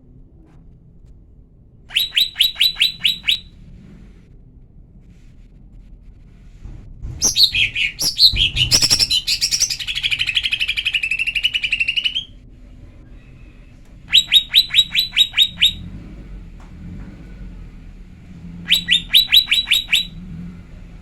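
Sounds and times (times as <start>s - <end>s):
bird chirping and trilling: 1.9s - 3.5s, 7.2s - 12.4s, 14.1s - 15.9s, 18.7s - 20.2s
sharp downward-sweeping bird notes: 1.9s - 3.5s, 7.2s - 12.4s, 14.1s - 15.9s, 18.7s - 20.2s.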